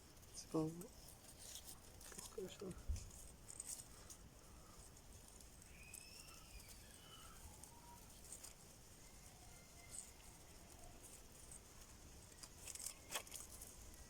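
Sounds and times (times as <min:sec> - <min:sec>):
faint short chirps: 0:05.6 - 0:08.1.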